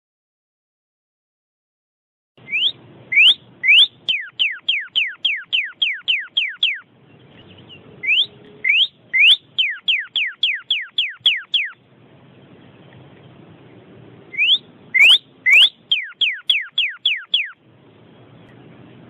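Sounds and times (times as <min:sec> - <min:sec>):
songbird whistling song: 0:02.4 - 0:11.8, 0:14.3 - 0:17.6.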